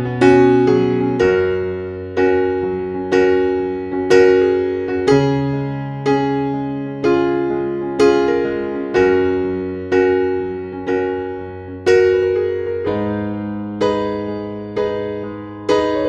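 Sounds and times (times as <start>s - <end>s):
soft electric piano chords: 0.0s - 16.0s.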